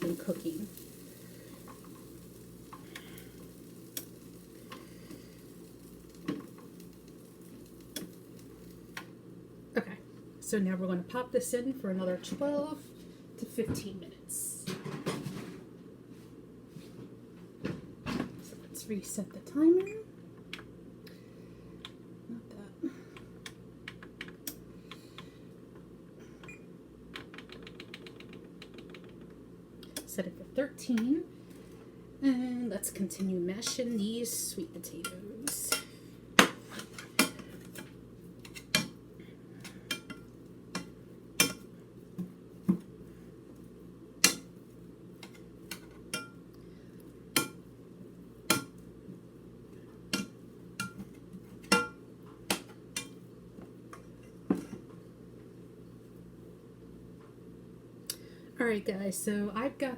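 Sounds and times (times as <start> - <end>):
faint sizzle: 0.0 - 14.6, 29.8 - 52.0.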